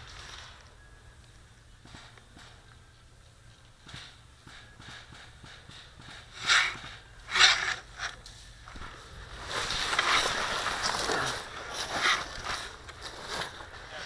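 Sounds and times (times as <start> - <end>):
rustling in brush: 8.8 - 14.0
footsteps crunching dry leaves: 8.9 - 14.0.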